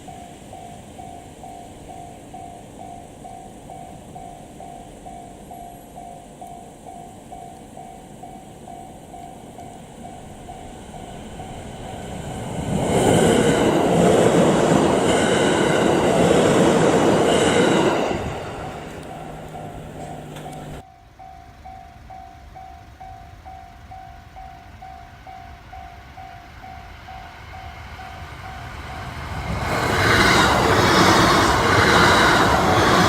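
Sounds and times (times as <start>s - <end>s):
level crossing bell ringing: 0.0s - 12.5s, 18.4s - 26.5s
train wheels clattering on rails: 0.0s - 20.8s, 21.7s - 33.0s.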